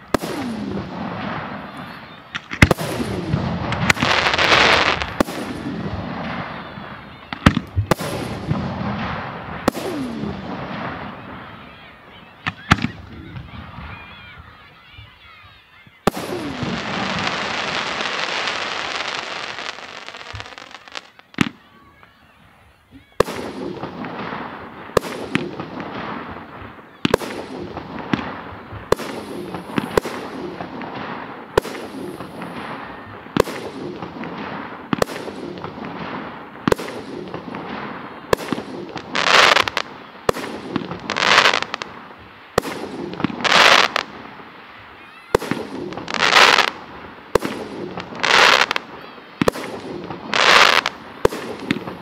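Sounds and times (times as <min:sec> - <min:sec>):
hissing crackling firework bursts: 0:00.0 - 0:15.3, 0:16.0 - 0:52.0.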